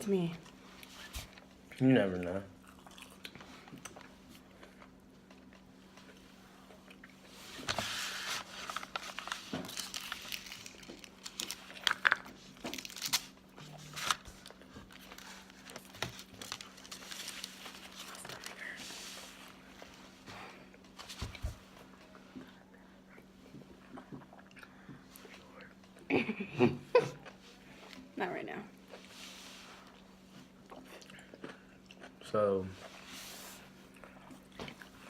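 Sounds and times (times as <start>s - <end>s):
food packaging crinkling: 7.6s - 18.7s.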